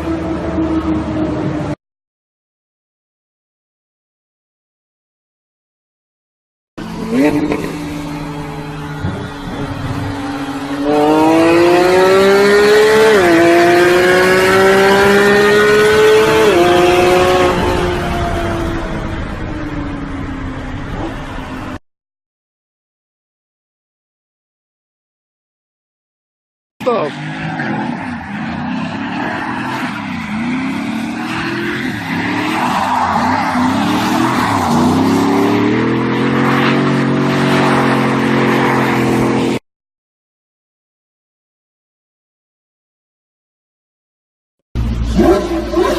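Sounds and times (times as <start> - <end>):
car engine accelerating hard: 6.8 - 21.8, 26.9 - 39.6, 44.8 - 45.9
tyres skidding: 6.8 - 21.8, 26.8 - 39.6.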